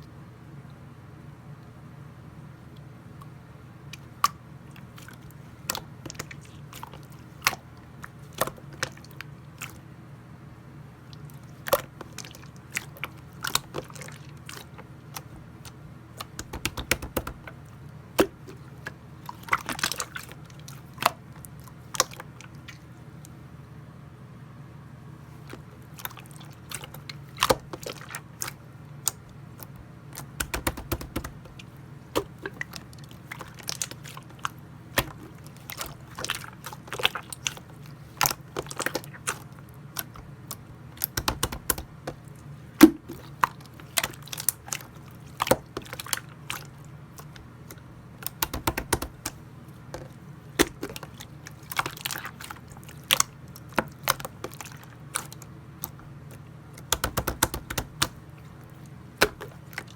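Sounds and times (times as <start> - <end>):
steady low hum: 0.0 - 59.9
sticky slime clicks and pops: 16.3 - 17.5, 30.4 - 31.5, 41.0 - 42.2, 48.2 - 49.4, 56.9 - 58.2.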